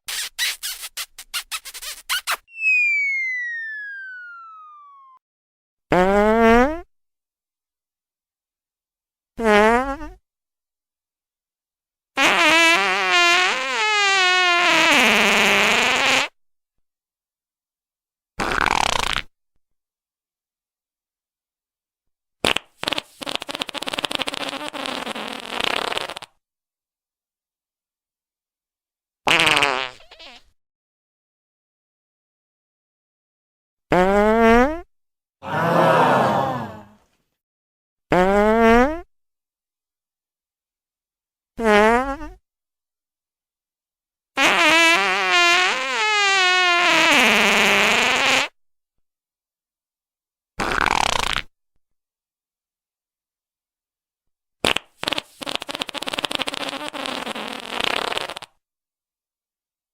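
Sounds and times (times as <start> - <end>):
fart sounds: 0.1 - 5.2, 5.9 - 6.9, 9.4 - 10.2, 12.2 - 16.4, 18.4 - 19.3, 22.4 - 26.4, 29.3 - 30.6, 33.9 - 36.8, 38.1 - 39.1, 41.6 - 42.4, 44.4 - 48.6, 50.6 - 51.5, 54.6 - 58.6.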